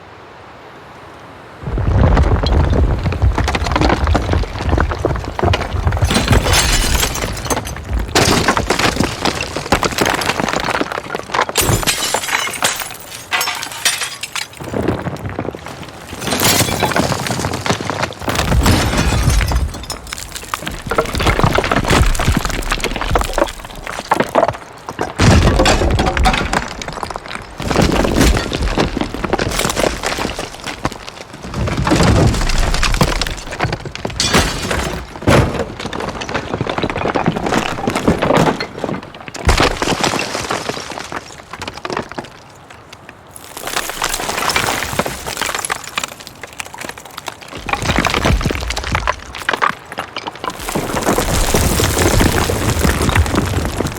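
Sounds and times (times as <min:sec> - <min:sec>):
rubble crumbling and clattering: 0:01.9 - 0:53.9
falling masonry crashes: 0:02.0 - 0:42.4, 0:43.3 - 0:53.9.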